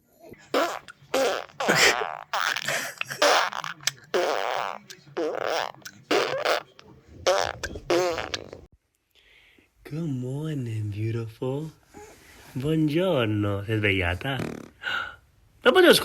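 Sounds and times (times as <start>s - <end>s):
baby farting: 0.5s - 8.7s, 14.4s - 14.8s.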